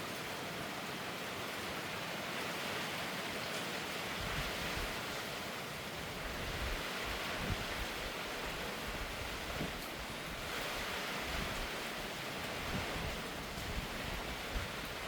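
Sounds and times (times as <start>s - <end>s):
rain falling: 0.0s - 15.0s
wind rumble on microphone: 4.2s - 5.1s, 6.0s - 15.0s.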